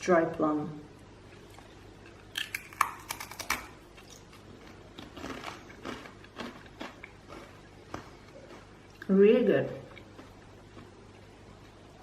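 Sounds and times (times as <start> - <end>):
crunching rice cracker: 2.4 - 9.1.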